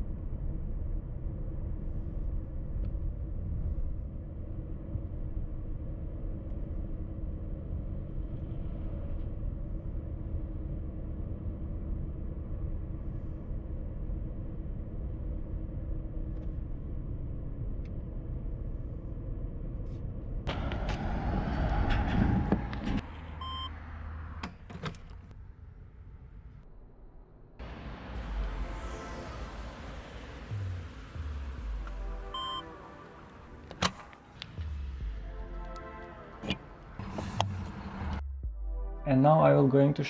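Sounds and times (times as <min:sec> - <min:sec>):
road and tyre rumble: 0:00.0 - 0:26.7, 0:27.6 - 0:38.5
short beep: 0:23.4 - 0:23.7, 0:31.8 - 0:33.2.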